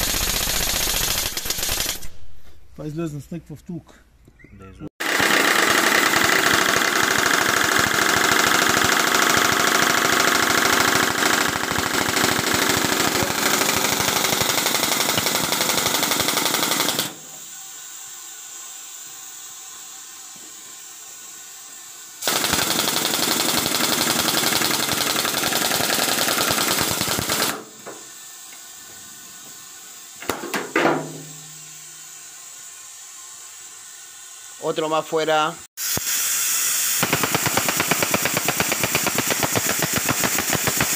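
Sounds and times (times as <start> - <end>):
air hammer firing rapid blows: 0.0 - 2.1, 5.0 - 17.5, 22.2 - 28.0, 30.2 - 31.9, 35.8 - 40.9
air hiss: 35.8 - 40.9.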